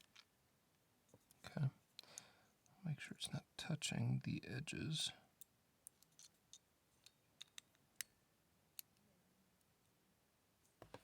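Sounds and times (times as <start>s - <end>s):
light clicks of metal parts: 5.4s - 8.2s.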